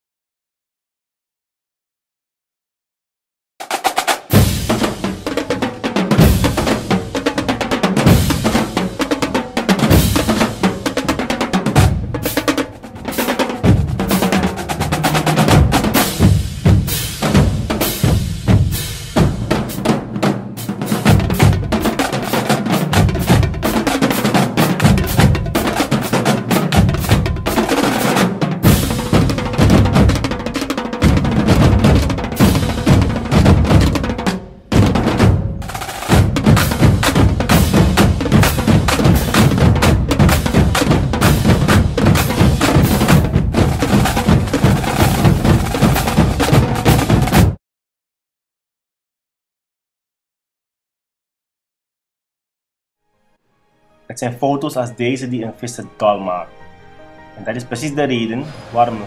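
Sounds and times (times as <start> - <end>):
fast drum kit beat: 3.6 - 47.6
percussion-driven music: 3.6 - 47.6, 57.4 - 59.0.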